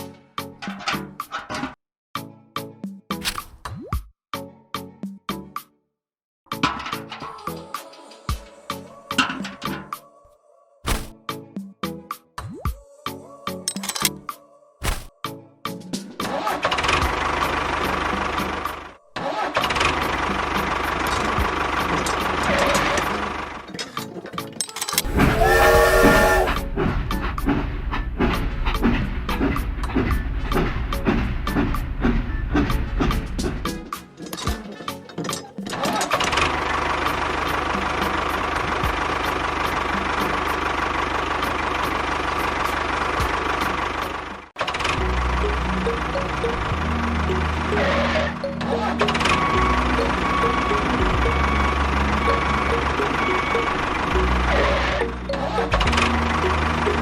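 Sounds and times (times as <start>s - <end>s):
engine running with low rumble: 16.8s - 19.0s, 19.6s - 24.4s, 26.1s - 57.0s
motor running: 25.0s - 26.6s.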